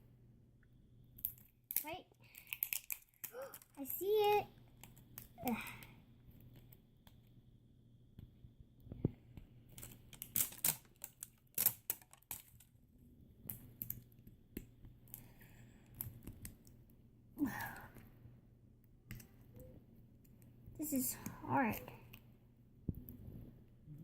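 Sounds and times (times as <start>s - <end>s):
plastic packaging clicking: 1.2s - 3.8s, 9.7s - 12.7s.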